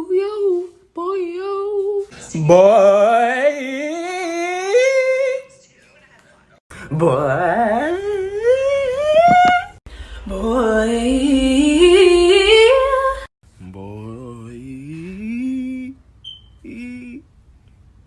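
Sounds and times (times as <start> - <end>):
person humming upward slides: 7.8 - 9.8.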